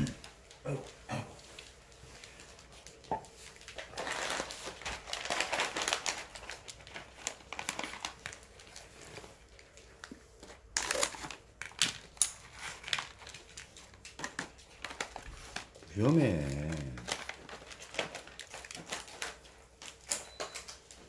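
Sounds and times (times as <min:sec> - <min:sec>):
plastic bag crinkling: 0:01.4 - 0:21.0.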